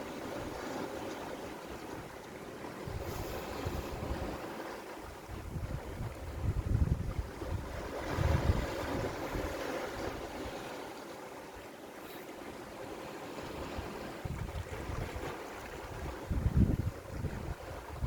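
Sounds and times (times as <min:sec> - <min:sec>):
waves washing against rocks: 0:00.0 - 0:11.2, 0:12.3 - 0:18.0
wind buffeting microphone: 0:02.7 - 0:10.6, 0:13.5 - 0:18.0.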